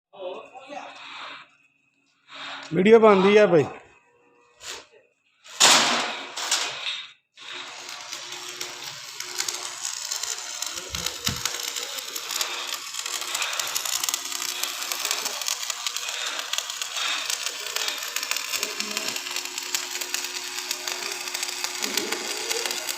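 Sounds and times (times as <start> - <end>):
welding arc crackling sizzle: 0.4 - 1.5, 2.2 - 4.8, 5.4 - 22.9
loud noisy burst: 7.4 - 22.9.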